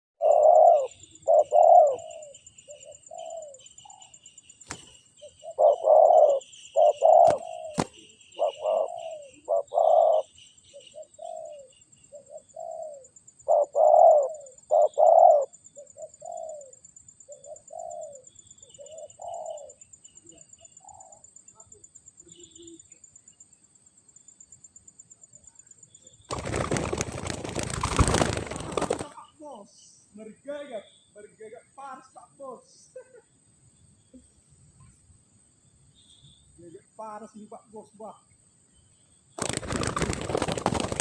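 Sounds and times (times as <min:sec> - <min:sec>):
dove cooing: 0:00.2 - 0:04.1, 0:05.2 - 0:21.3, 0:26.3 - 0:29.2
faint bird chirps: 0:00.2 - 0:40.5.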